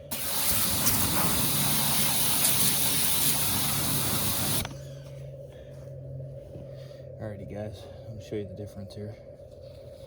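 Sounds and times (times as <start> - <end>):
water spraying from hose nozzle: 0.0 - 4.7.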